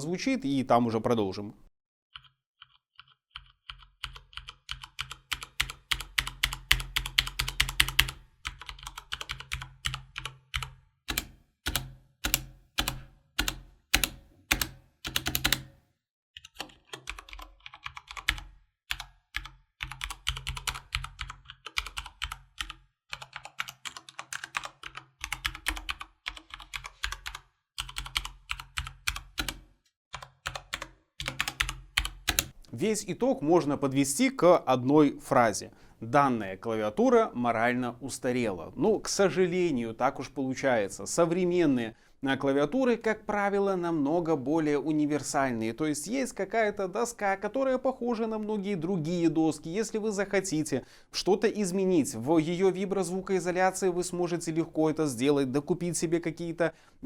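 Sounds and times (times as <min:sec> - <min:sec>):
mechanical keyboard typing: 0:02.2 - 0:15.7, 0:16.4 - 0:29.6, 0:30.2 - 0:32.6.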